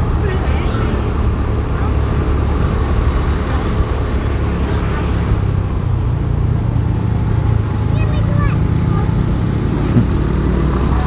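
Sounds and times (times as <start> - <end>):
motorcycle engine: 0.0 - 11.0
road noise: 0.0 - 11.0.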